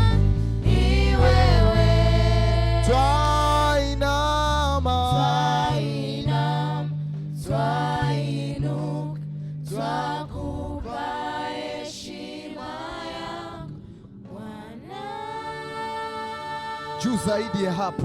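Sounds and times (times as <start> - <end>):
low bass note: 0.0 - 10.9
voices singing worship song: 0.0 - 18.0.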